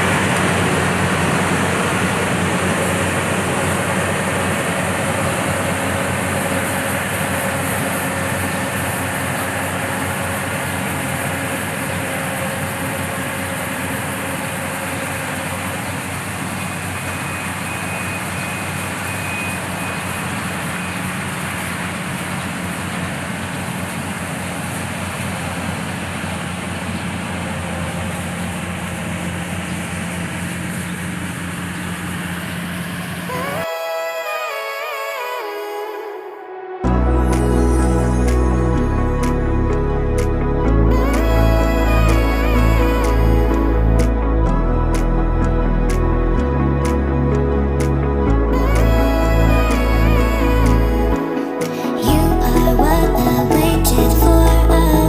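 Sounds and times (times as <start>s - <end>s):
combine harvester engine humming: 0.0s - 35.3s, 36.5s - 55.0s.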